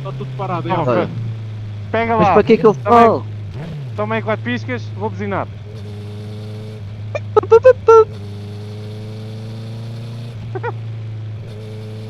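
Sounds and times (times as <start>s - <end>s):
motorcycle engine running: 0.0s - 12.0s
motorcycle horn beeps: 7.2s - 7.9s.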